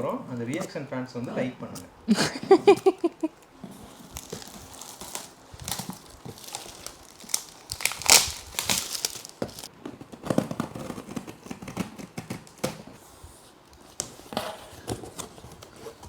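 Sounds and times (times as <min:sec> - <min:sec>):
wrapping paper tearing and rustling: 0:03.8 - 0:09.7.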